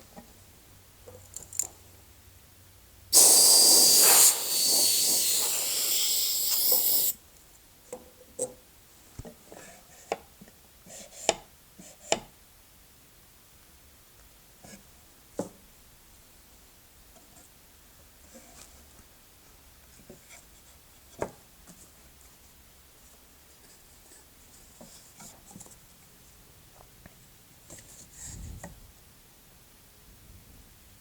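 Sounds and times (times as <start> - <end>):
loud spraying hiss: 3.1 - 7.2.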